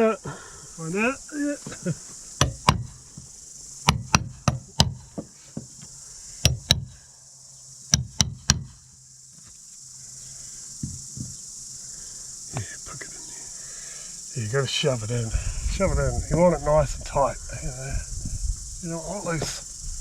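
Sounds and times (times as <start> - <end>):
mallet striking caulking iron: 2.4 - 3.0, 3.8 - 5.3, 6.4 - 7.0, 7.9 - 8.8.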